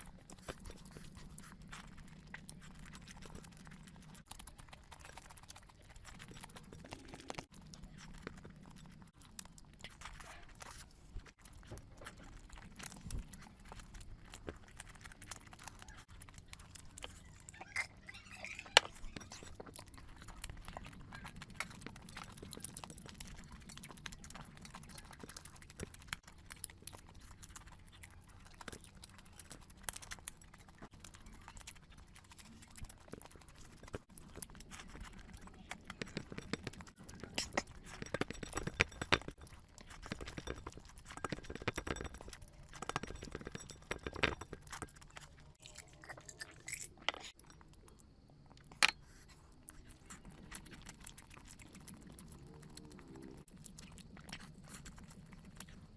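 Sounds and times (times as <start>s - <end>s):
wet chewing and mouth clicks: 0.0s - 55.9s
plate clinking: 37.3s - 45.3s.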